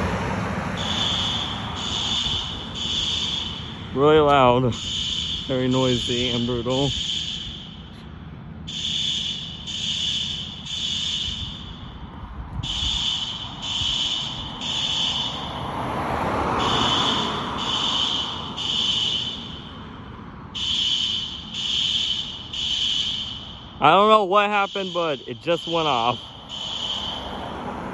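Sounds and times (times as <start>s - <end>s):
fire alarm horn blasts: 0.8s - 8.0s, 8.7s - 15.7s, 16.6s - 19.8s, 20.6s - 27.5s.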